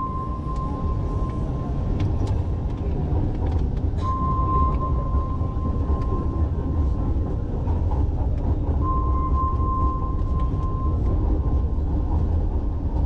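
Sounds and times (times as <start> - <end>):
train rumbling: 0.0 - 13.0.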